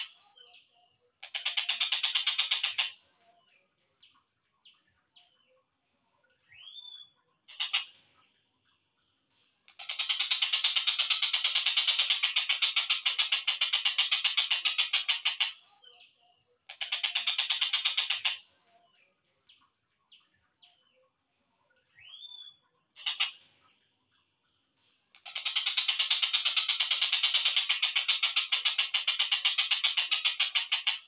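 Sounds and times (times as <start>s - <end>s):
kingfisher chattering: 1.2s - 3.0s, 16.7s - 18.4s, 23.0s - 23.4s.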